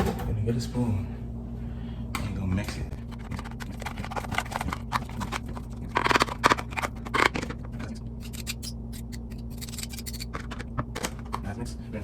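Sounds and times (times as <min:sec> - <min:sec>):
spoon scraping a bowl: 0:08.2 - 0:10.4.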